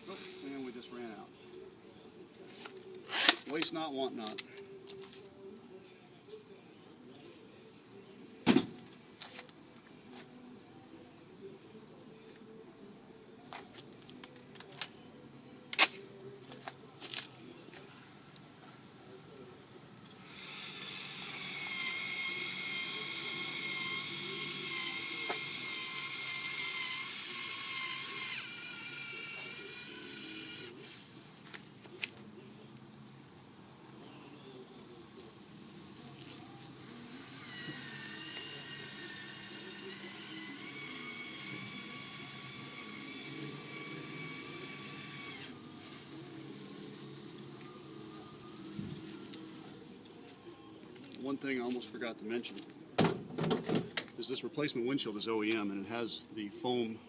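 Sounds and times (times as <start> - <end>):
caulking gun motor whine: 20.1 - 31.1, 36.6 - 50.0.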